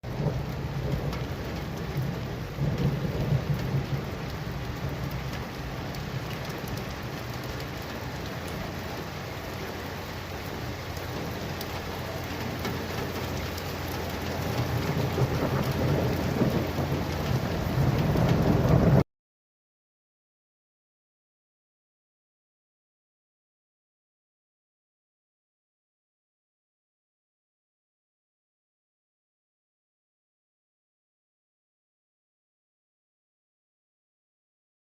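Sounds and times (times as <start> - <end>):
heavy rain: 0.0 - 19.1
thunder rumbling: 0.1 - 19.0.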